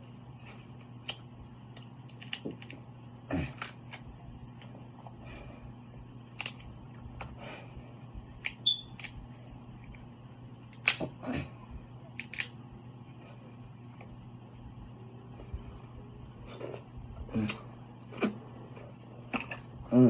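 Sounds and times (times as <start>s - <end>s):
sharp clicks and snaps of eating: 0.0s - 5.0s, 6.3s - 7.3s, 8.4s - 11.1s, 12.1s - 12.6s
steady low hum: 0.0s - 20.0s.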